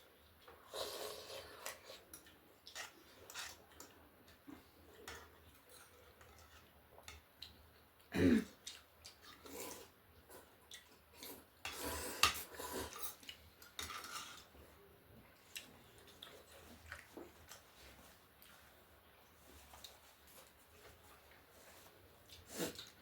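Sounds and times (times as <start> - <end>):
person chewing: 6.9 - 13.5, 15.4 - 17.8, 21.2 - 23.0.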